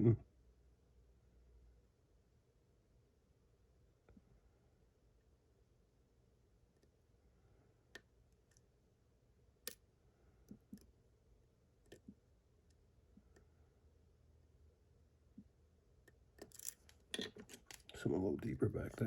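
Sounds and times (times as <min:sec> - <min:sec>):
lock pick clicking on pins: 0:16.0 - 0:18.0.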